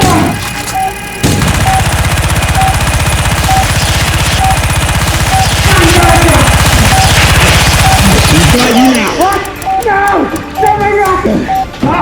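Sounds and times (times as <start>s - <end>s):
short high beep: 6.8s - 9.9s.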